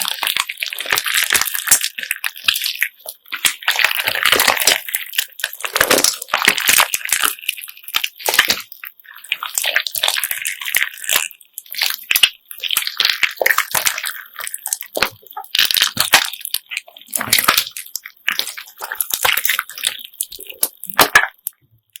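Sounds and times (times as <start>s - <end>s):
slime squelching: 0.0s - 22.0s.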